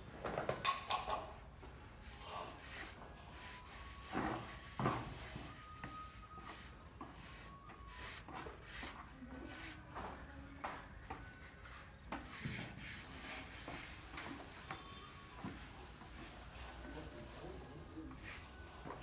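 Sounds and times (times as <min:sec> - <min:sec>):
hand scraping and rubbing a surface: 0:02.0 - 0:09.8, 0:12.1 - 0:14.5.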